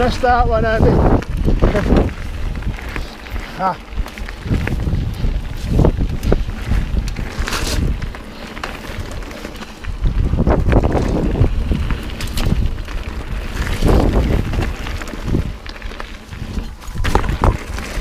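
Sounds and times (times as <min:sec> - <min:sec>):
bike knocks and rattles: 0:00.0 - 0:18.0
bike rolling over rough trail: 0:00.0 - 0:18.0
wind buffeting microphone: 0:00.0 - 0:18.0.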